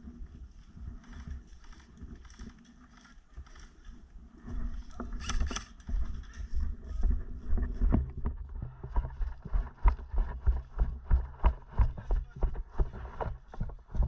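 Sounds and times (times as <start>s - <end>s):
footsteps jogging: 5.8s - 14.0s.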